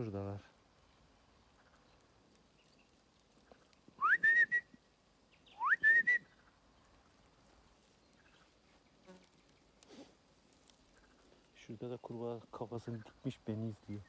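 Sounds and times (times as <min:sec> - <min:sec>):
loud rising whistles: 0:04.0 - 0:04.7, 0:05.6 - 0:06.3.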